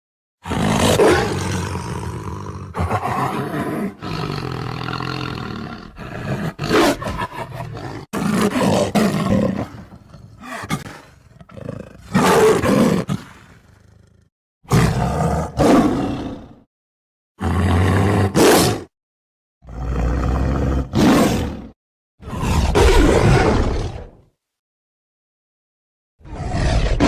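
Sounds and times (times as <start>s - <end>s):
tiger roaring and growling: 0.4s - 16.7s, 17.4s - 18.9s, 19.6s - 24.2s, 26.2s - 27.0s.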